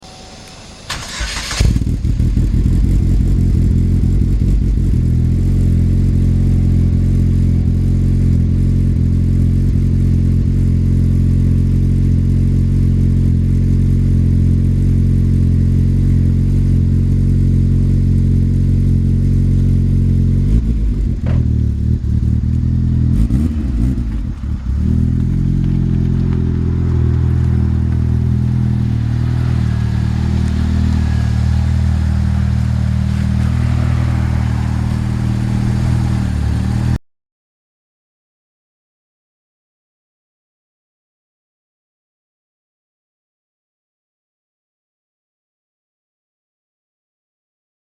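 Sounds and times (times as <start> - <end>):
car engine starting and idling: 0.0 - 37.0.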